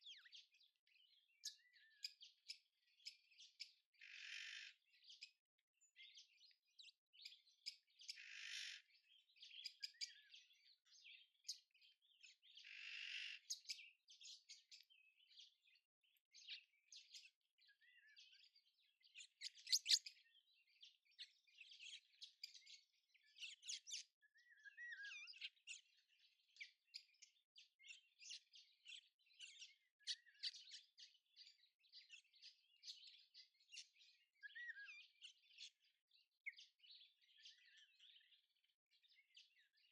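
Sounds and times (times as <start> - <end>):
small birds chirping: 0.0 - 39.9
harsh rasping bird calls: 4.0 - 4.8, 8.1 - 8.9, 12.6 - 13.7.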